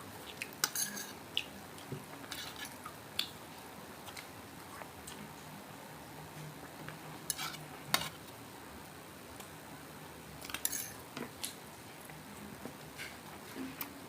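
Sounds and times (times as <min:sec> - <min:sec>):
utensils clattering on plates: 0:00.6 - 0:01.2, 0:10.6 - 0:11.0.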